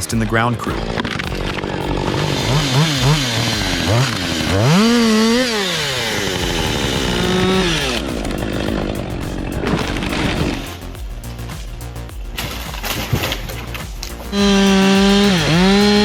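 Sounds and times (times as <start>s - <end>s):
chainsaw engine revving: 0.3s - 10.8s, 14.3s - 16.0s.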